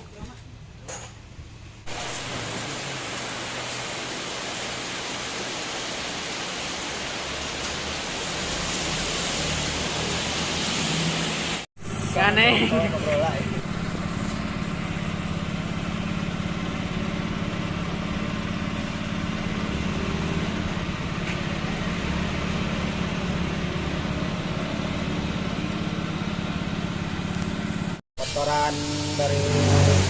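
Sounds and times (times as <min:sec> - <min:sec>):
scooter engine idling: 0:11.8 - 0:19.7.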